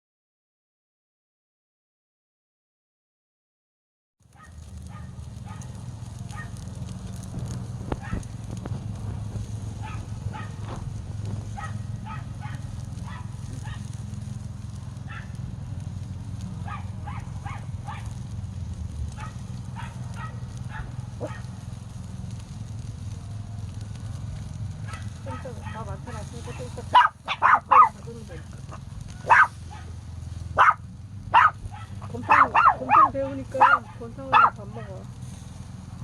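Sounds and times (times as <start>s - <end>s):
wood fire crackling: 4.2s - 36.0s.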